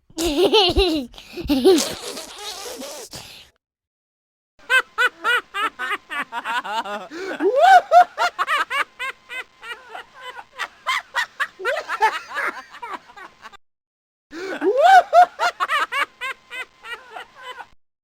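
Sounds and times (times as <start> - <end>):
person laughing hard: 0.1 - 3.0, 4.8 - 13.2, 14.4 - 17.8.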